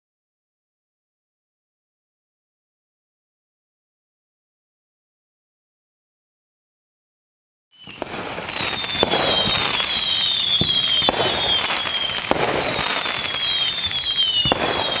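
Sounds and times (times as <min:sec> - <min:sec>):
falling fireworks whistles: 0:07.7 - 0:15.0
fireworks bangs: 0:07.8 - 0:15.0
fireworks crackling: 0:07.8 - 0:15.0.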